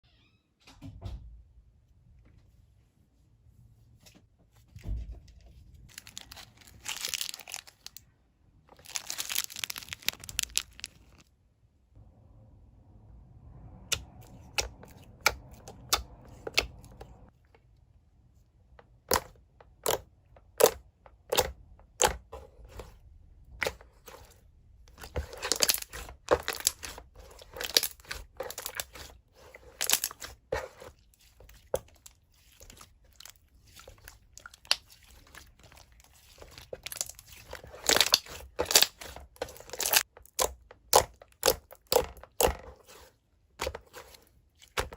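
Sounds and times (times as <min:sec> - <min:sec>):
crinkly tearing rustle: 0:05.9 - 0:08.0, 0:08.7 - 0:11.3
slime popping and crackling: 0:05.9 - 0:08.0, 0:08.7 - 0:11.2, 0:25.0 - 0:29.1, 0:33.2 - 0:42.5.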